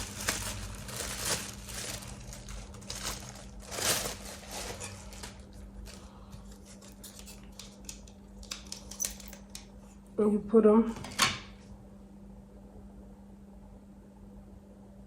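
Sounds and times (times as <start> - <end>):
rustling of handled pieces: 0.0 - 9.6.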